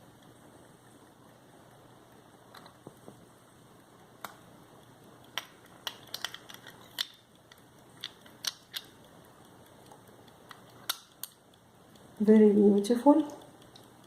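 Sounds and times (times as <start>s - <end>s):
pocket watch case clicking: 5.4s - 8.9s.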